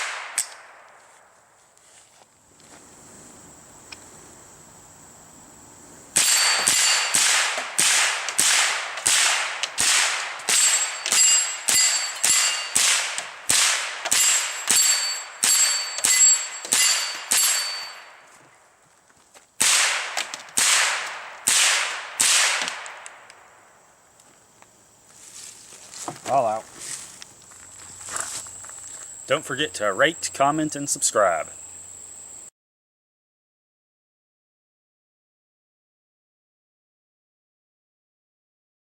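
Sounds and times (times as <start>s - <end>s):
rifle shots: 0.0s - 0.9s, 6.2s - 17.9s, 19.6s - 23.2s
bullets ringing steel plate: 6.2s - 18.2s.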